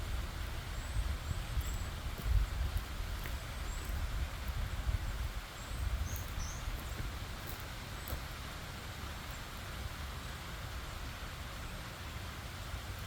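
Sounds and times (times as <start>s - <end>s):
stream water running: 0.0s - 13.0s
bird chirp: 5.6s - 7.0s.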